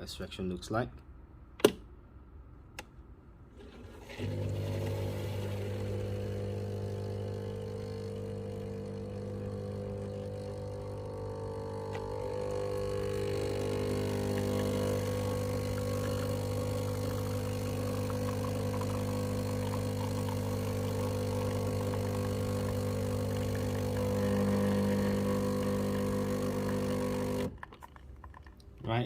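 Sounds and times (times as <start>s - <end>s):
espresso machine pump buzzing: 4.1s - 27.6s.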